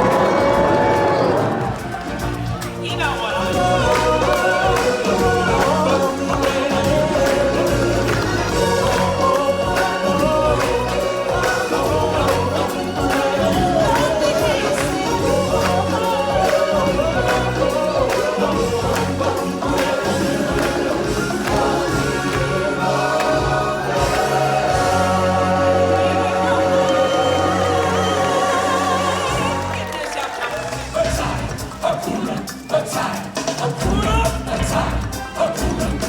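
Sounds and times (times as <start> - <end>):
band playing: 0.0 - 36.0
group of voices singing: 0.0 - 36.0
steady percussion beat: 0.0 - 36.0.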